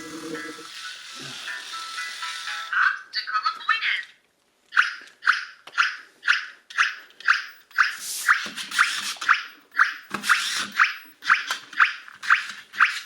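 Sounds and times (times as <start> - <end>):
toy car motor whir: 0.0 - 2.7, 10.2 - 11.6, 12.2 - 13.0
toy car electronic chirps: 6.4 - 13.0.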